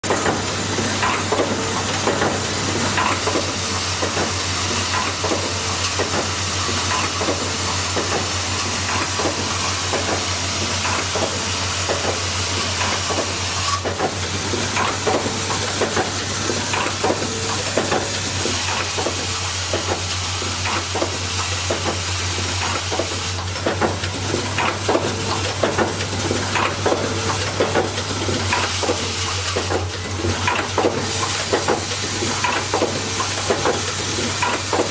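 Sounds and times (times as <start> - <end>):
welding machine hiss: 0.0 - 34.9.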